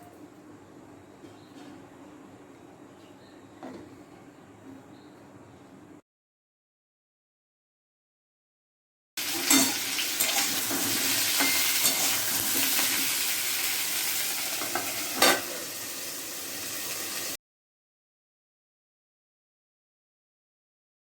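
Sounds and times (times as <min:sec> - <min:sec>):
food sizzling in hot oil: 0:09.2 - 0:17.4.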